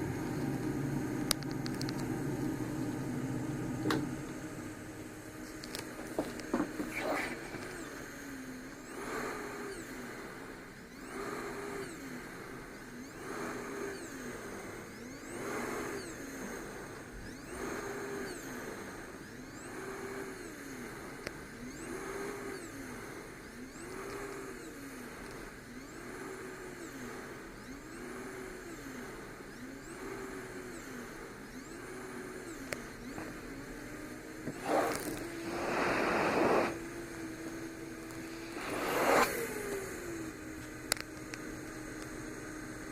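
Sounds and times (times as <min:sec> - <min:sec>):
cpap blower tone: 0:00.0 - 0:10.2, 0:31.0 - 0:42.8
hiss of air: 0:34.5 - 0:36.8, 0:38.1 - 0:39.8.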